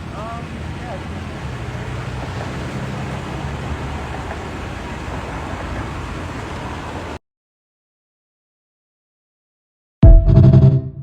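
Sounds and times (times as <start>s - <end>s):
motor vehicle running: 0.0s - 7.2s
roadside traffic noise: 0.0s - 7.2s.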